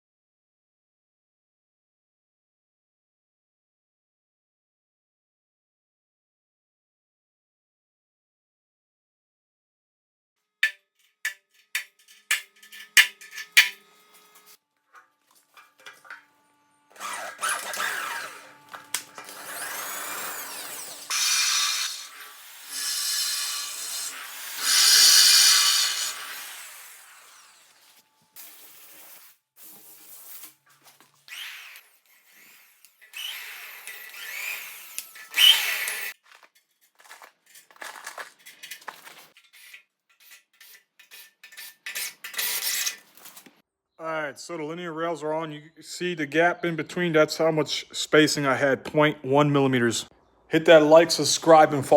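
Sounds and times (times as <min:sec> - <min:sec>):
power drill boring into steel: 0:16.9 - 0:30.6, 0:31.2 - 0:36.2, 0:39.5 - 0:43.0.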